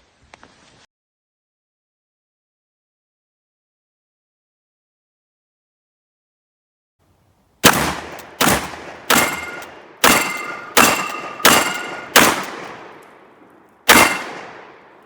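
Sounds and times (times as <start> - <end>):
shotgun firing rapid shots: 7.6 - 13.0, 13.9 - 15.0.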